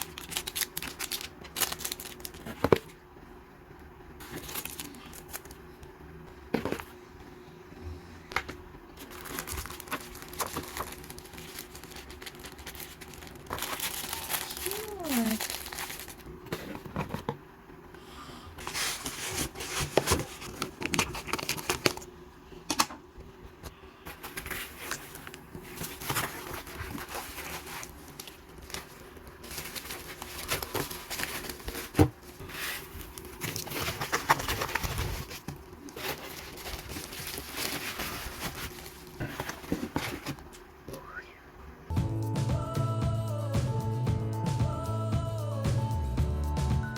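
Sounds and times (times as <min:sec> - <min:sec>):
plastic wrappers crinkling: 0:00.0 - 0:02.8, 0:04.2 - 0:05.6, 0:09.0 - 0:16.8, 0:18.7 - 0:22.1, 0:24.1 - 0:40.5.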